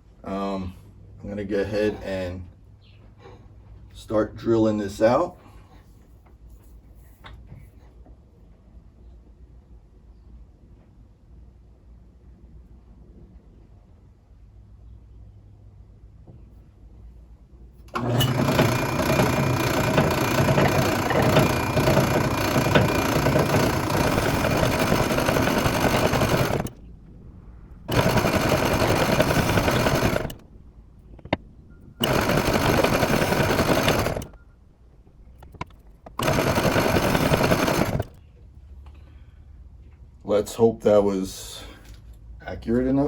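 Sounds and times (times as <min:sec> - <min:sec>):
drill press drilling into wood: 0:17.9 - 0:26.8, 0:27.9 - 0:30.4, 0:32.0 - 0:34.4, 0:36.1 - 0:38.2.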